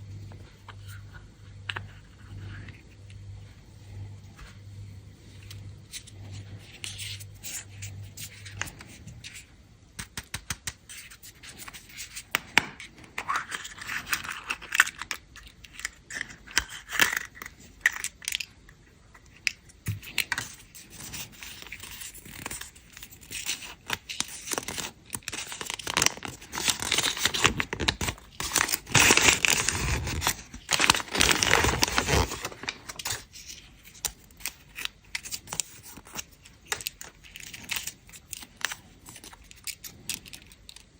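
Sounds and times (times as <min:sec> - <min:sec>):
candy wrappers crinkling: 0:10.4 - 0:18.5, 0:19.3 - 0:40.9.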